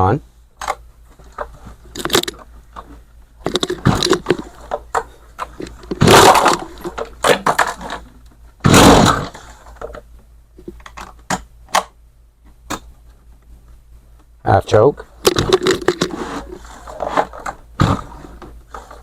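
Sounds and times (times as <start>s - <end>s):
handling clicks and rattles: 0.6s - 8.1s, 15.2s - 16.2s.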